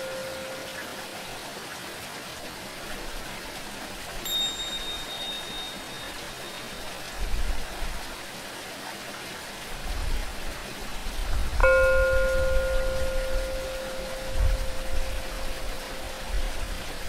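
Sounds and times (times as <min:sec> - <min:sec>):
tingsha ringing tone: 0:00.0 - 0:01.0, 0:04.3 - 0:07.0, 0:11.6 - 0:16.8
running water: 0:00.0 - 0:17.0.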